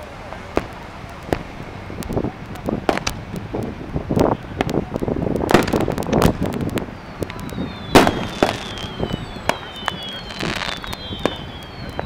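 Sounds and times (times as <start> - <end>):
fireworks bangs and crackles: 0.0 - 12.0
firework whistles gliding down: 5.5 - 12.0.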